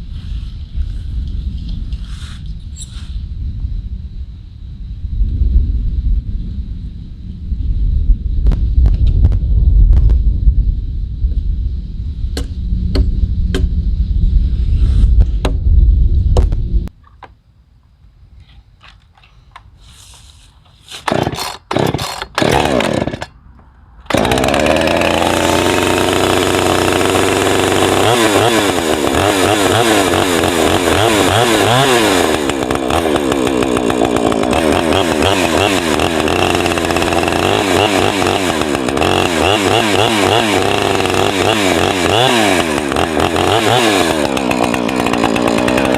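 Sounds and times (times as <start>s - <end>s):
loud low rumble: 3.3s - 16.9s
small gasoline engine running: 21.1s - 23.3s, 24.1s - 45.9s.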